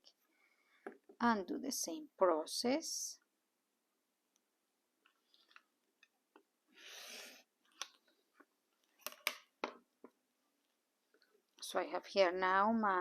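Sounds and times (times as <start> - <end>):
small clicks and taps: 7.6 - 10.2.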